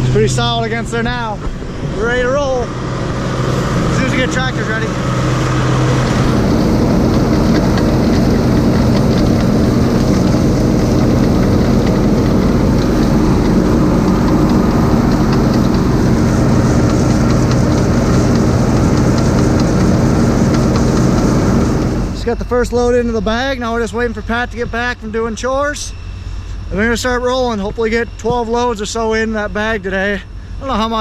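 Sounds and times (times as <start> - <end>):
vehicle engine running: 0.0 - 25.0
light rattling: 3.5 - 22.2.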